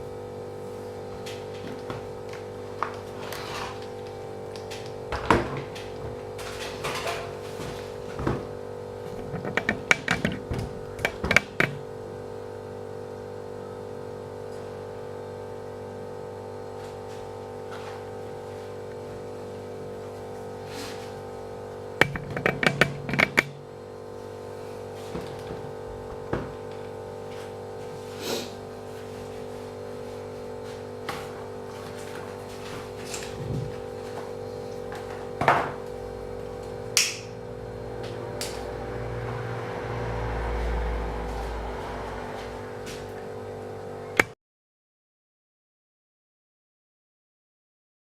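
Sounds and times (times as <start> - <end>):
hum of held tones: 0.0 - 44.4
sharp clicks and knocks: 9.1 - 11.8, 22.0 - 23.6.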